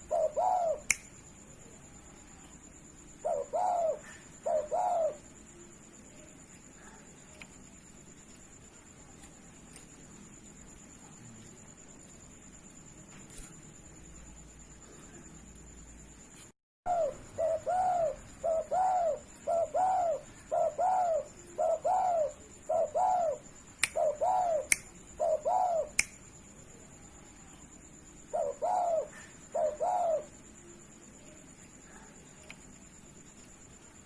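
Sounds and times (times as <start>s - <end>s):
dove cooing: 0.0s - 0.9s, 3.2s - 5.4s, 16.9s - 26.0s, 28.3s - 30.4s
sharp clicks: 0.9s - 1.1s, 26.0s - 26.2s.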